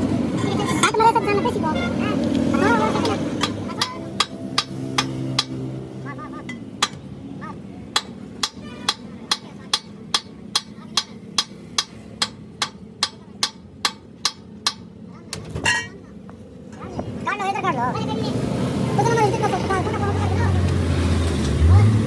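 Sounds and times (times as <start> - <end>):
hammer striking metal: 3.0 - 5.8, 6.5 - 7.1, 7.9 - 14.9.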